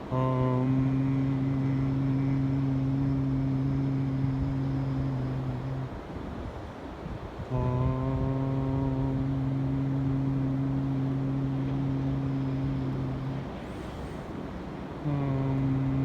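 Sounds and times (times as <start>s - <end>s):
low voice chanting: 0.0s - 6.3s, 7.4s - 16.0s
wind: 0.0s - 16.0s.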